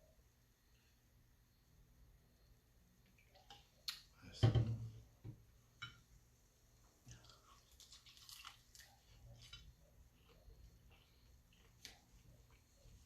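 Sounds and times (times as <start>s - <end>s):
person chewing food: 7.1s - 13.0s.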